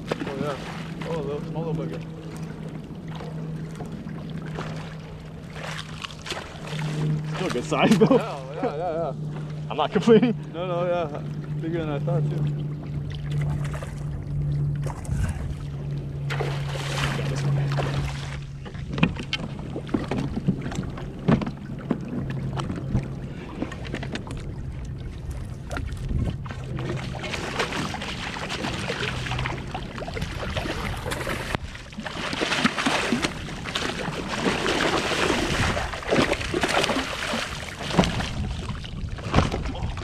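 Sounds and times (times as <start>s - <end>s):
water splashing around kayak: 0.0s - 40.0s
knocks and clatters on hull: 12.4s - 40.0s
wind on the microphone: 14.8s - 15.8s, 24.4s - 27.8s, 35.3s - 36.7s, 37.6s - 40.0s.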